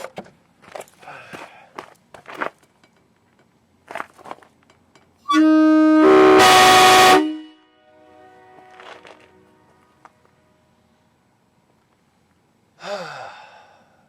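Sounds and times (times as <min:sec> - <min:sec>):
train horn chord: 0:05.3 - 0:11.1.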